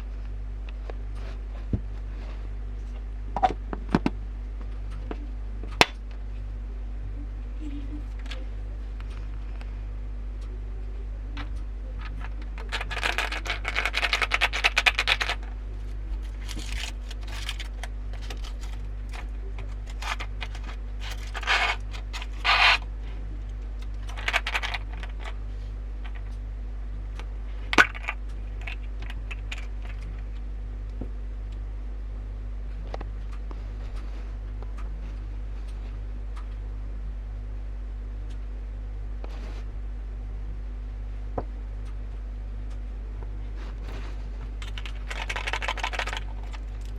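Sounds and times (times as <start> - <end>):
electrical hum: 0.0 - 46.9
clattery scrapes: 12.1 - 15.5, 16.2 - 22.9, 43.8 - 46.9.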